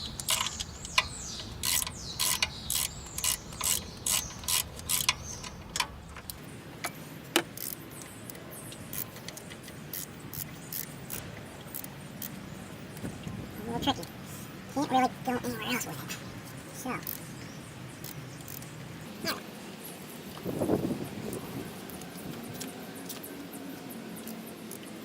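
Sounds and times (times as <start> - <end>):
socket ratchet clicking: 0.1 - 6.4, 7.4 - 12.4, 18.0 - 18.8.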